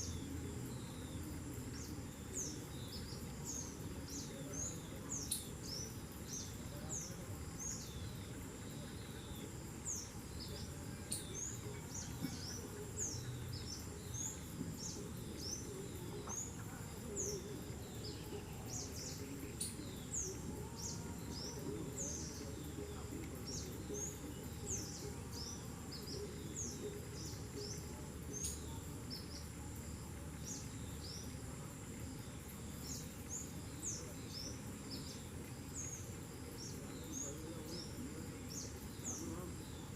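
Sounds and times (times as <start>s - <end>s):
birds chirping: 0.0s - 39.9s
low background noise: 0.0s - 39.9s.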